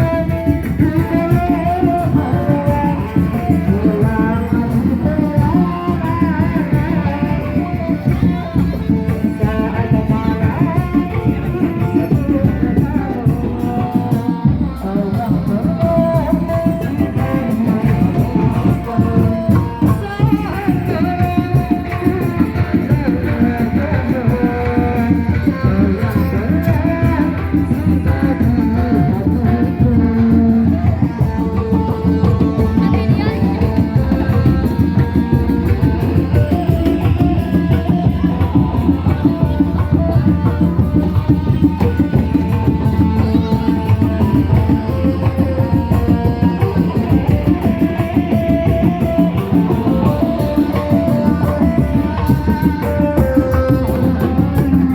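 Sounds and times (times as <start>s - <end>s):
hand drums fast rhythm: 0.0s - 54.9s.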